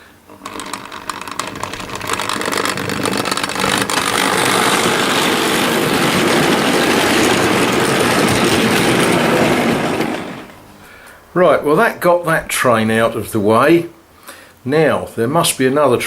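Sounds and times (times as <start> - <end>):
model train running on track: 0.0 - 10.8.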